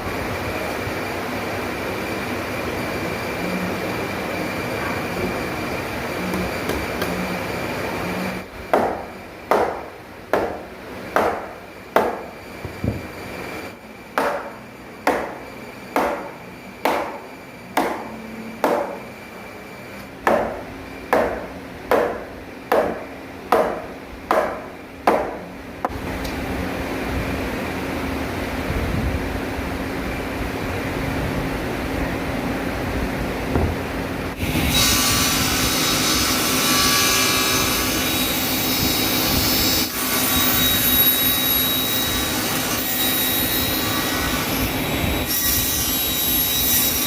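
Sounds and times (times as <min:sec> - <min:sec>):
steady machine noise: 0:00.0 - 0:35.8
hammer blows on wood: 0:14.2 - 0:15.4, 0:16.0 - 0:17.2, 0:17.8 - 0:19.0, 0:20.2 - 0:25.4.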